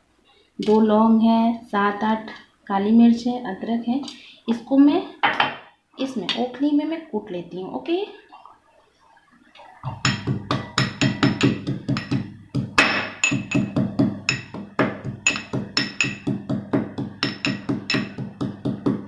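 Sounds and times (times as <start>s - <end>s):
pestle pounding in mortar: 9.9s - 19.0s.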